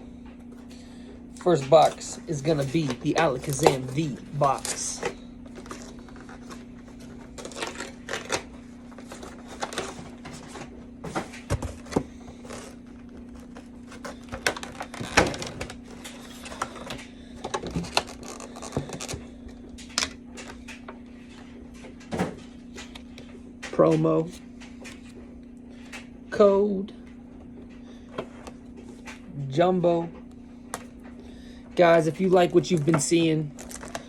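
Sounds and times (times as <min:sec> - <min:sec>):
steady low hum: 0:00.0 - 0:34.0
cardboard and plastic packaging rustling: 0:01.4 - 0:26.2, 0:31.8 - 0:34.0.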